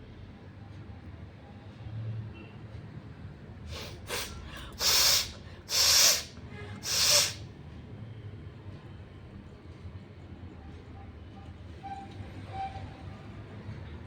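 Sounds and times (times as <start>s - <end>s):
person blowing air through nose: 3.7s - 7.4s.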